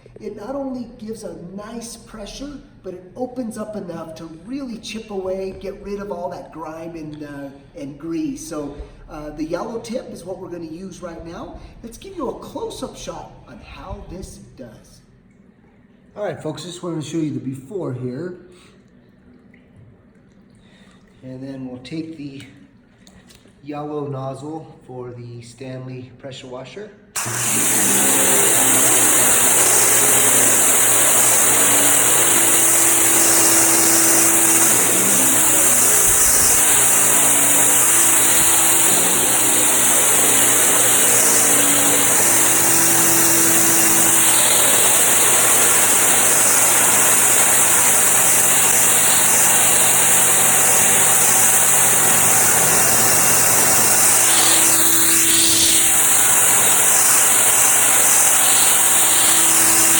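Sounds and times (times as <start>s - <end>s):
pressure washer spraying concrete: 27.2s - 59.9s.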